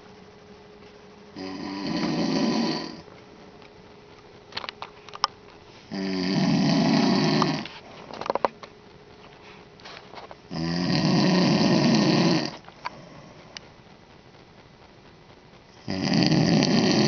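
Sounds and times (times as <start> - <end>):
man snoring: 1.4 - 3.0, 5.9 - 7.7, 10.5 - 13.3, 15.8 - 17.0.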